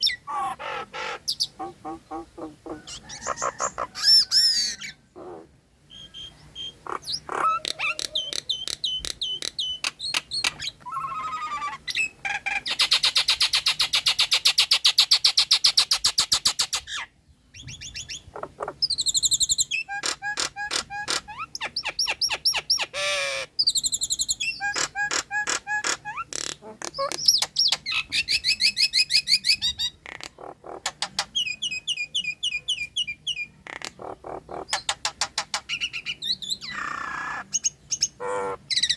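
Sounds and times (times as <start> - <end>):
myna whistling and chattering: 6.0 - 12.1.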